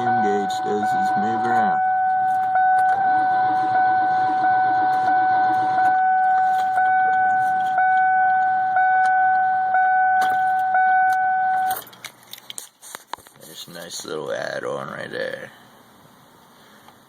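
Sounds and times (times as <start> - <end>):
low drone: 0.0 - 8.6
car electronic warning tone: 0.0 - 11.8.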